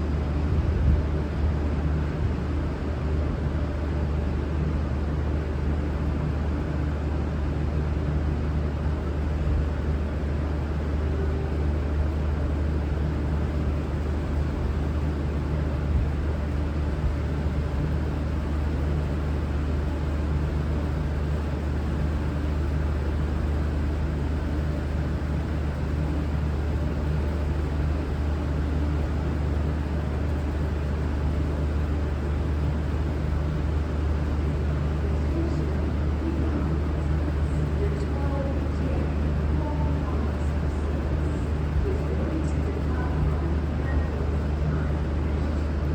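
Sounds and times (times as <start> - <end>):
diesel train engine idling: 0.0 - 45.9.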